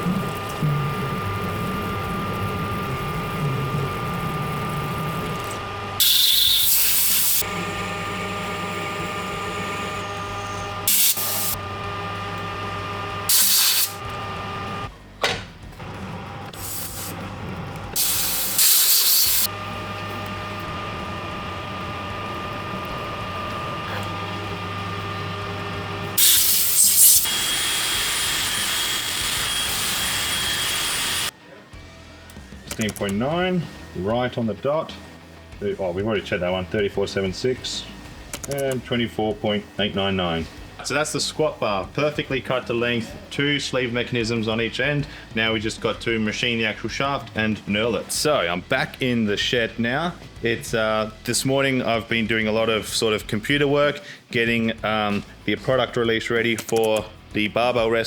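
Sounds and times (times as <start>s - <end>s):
metal lathe humming and whining: 0.0s - 15.1s, 15.7s - 32.1s
loud hissing: 18.0s - 19.5s, 26.1s - 28.0s.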